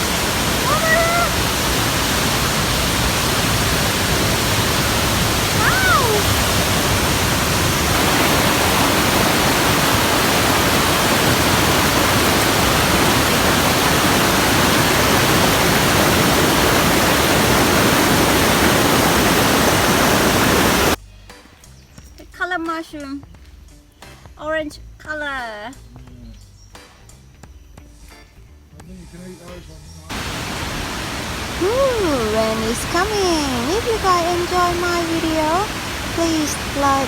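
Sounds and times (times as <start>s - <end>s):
waterfall rushing: 0.0s - 21.0s, 30.1s - 37.0s.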